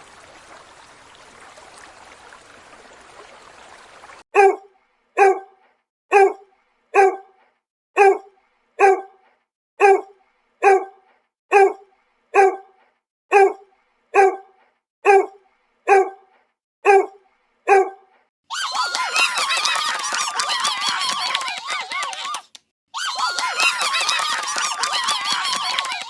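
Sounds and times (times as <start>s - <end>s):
dog barking: 4.4s - 7.4s, 8.0s - 9.2s, 9.8s - 18.1s.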